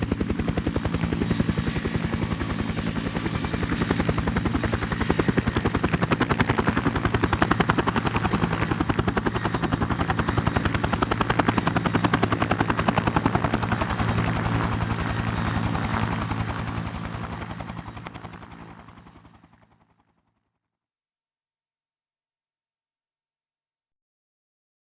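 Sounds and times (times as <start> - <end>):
helicopter rotor beating: 0.0 - 19.8.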